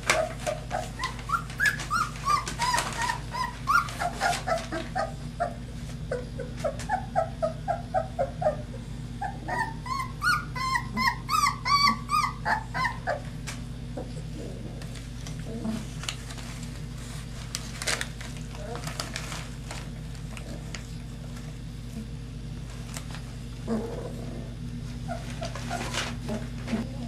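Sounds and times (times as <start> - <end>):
puppies whimpering and squealing: 0.0 - 15.9, 23.6 - 27.0.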